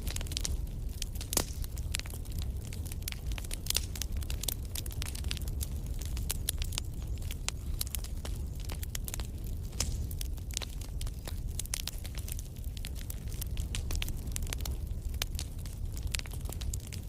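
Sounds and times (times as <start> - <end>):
campfire crackling: 0.0 - 17.0
wood snapping: 0.1 - 5.2.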